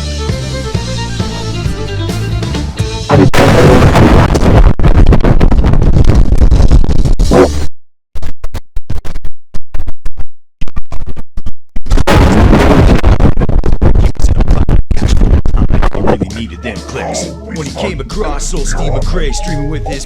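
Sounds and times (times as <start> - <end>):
distorted computer shutdown sound: 16.7 - 20.0.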